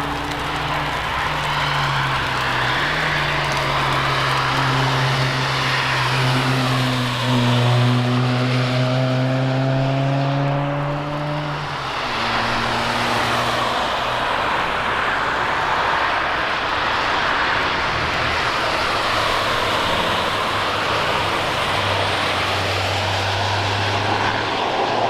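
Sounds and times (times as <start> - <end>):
race car engines passing: 0.0 - 25.0.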